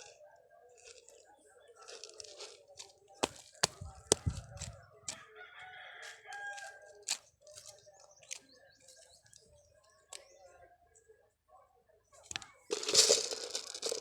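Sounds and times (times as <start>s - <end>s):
rooster crowing: 5.1s - 6.9s.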